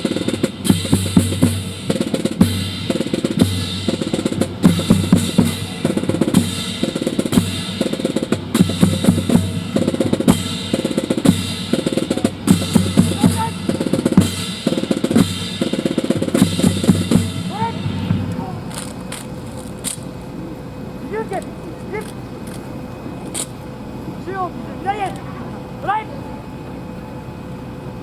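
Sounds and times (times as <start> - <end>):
bass drum beats: 0.0 - 20.3.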